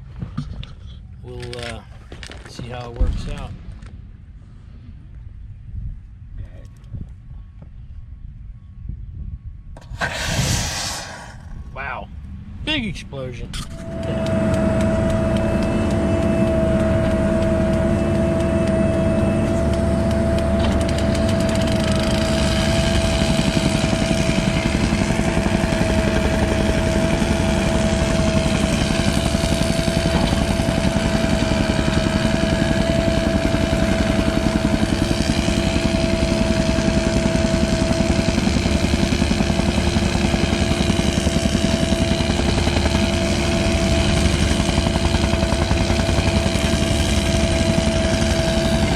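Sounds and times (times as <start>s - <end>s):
high whine: 13.6s - 48.9s
diesel engine running: 13.7s - 48.9s.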